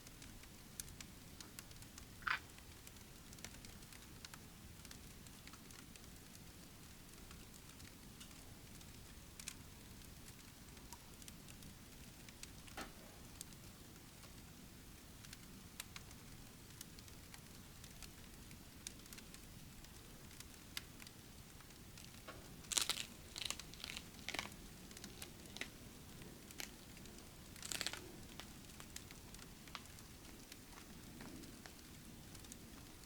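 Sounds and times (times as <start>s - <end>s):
faint steady hiss: 0.0s - 33.0s
sharp ticks: 0.2s - 5.0s
crinkling rustling: 20.4s - 33.0s.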